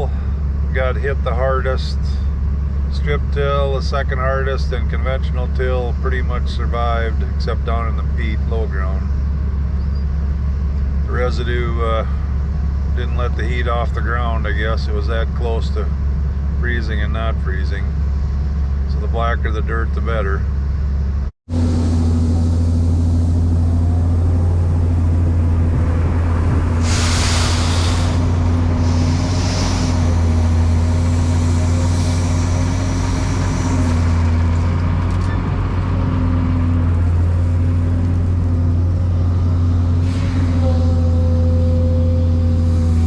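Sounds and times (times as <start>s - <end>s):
diesel engine running: 0.0s - 43.0s
hissing bursts: 26.7s - 34.3s.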